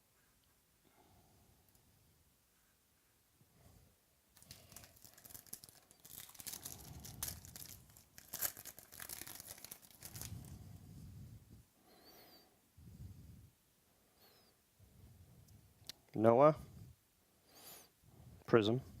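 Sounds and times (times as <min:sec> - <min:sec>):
foil wrapper tearing and crinkling: 0:04.4 - 0:10.5.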